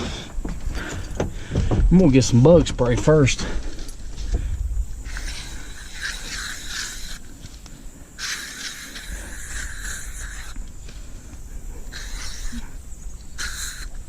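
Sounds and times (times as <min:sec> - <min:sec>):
aerosol can spraying: 0:05.1 - 0:07.3, 0:08.2 - 0:10.6, 0:11.9 - 0:12.6, 0:13.4 - 0:14.0.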